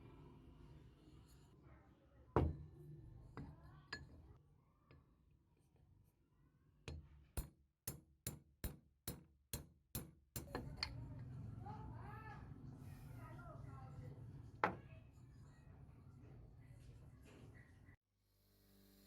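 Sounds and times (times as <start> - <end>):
hard objects knocking: 14.6 - 14.8.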